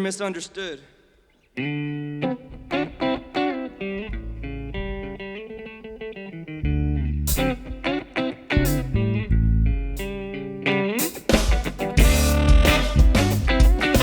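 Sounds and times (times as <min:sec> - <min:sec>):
guitar picking single notes: 0:01.6 - 0:14.0
deep low note: 0:04.0 - 0:05.4, 0:08.6 - 0:09.9.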